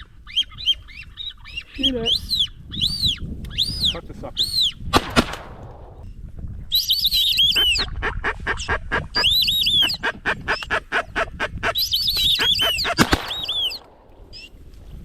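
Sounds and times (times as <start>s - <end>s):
whistling ducks calling: 0.0s - 4.8s, 6.7s - 7.9s, 8.5s - 14.5s.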